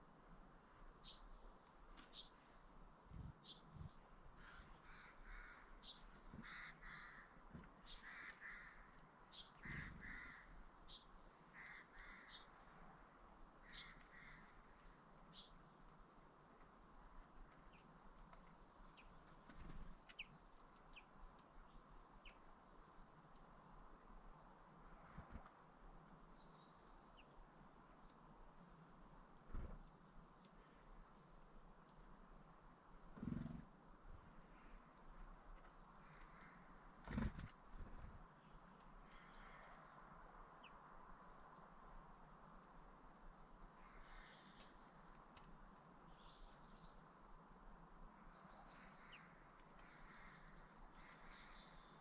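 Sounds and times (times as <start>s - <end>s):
wild birds calling: 4.4s - 10.6s.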